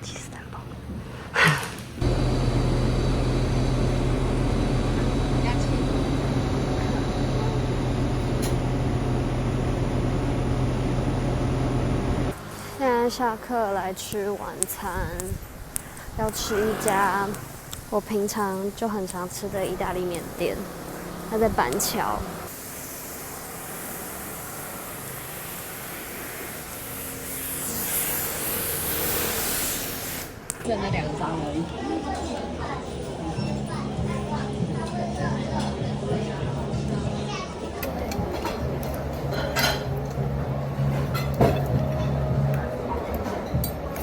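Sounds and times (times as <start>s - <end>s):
machine hum: 2.0s - 13.8s, 15.4s - 30.6s, 37.8s - 43.2s
even hiss: 14.1s - 30.6s.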